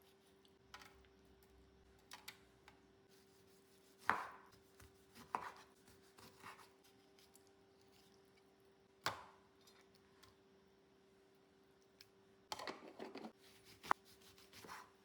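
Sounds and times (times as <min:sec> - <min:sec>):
knife chopping on cutting board: 0:04.0 - 0:06.7, 0:12.6 - 0:15.0.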